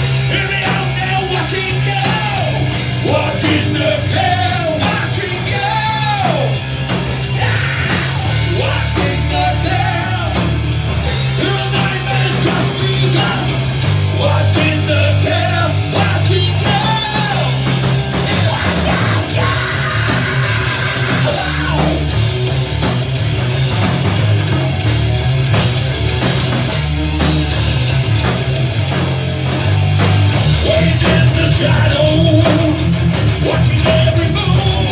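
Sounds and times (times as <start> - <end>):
guitars: 0.0 - 34.9
heavy bass line: 0.0 - 34.9
pounding drums: 0.0 - 34.9
person singing: 30.6 - 34.9.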